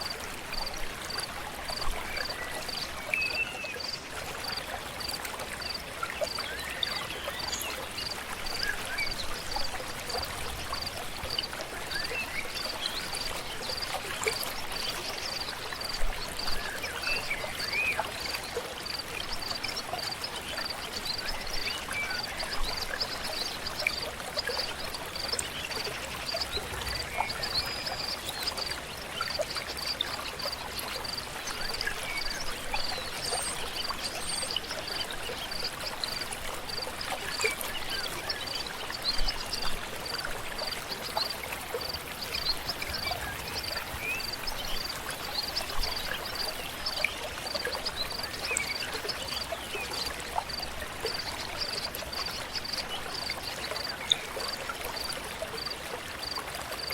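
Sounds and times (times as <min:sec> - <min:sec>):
river flowing: 0:00.0 - 0:56.9.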